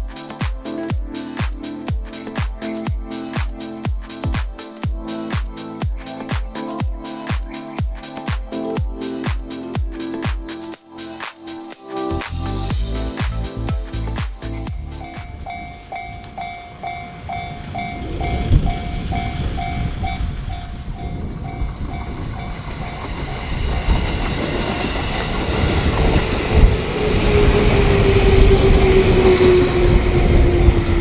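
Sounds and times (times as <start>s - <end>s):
train rumble and wheel clatter: 12.1s - 31.0s.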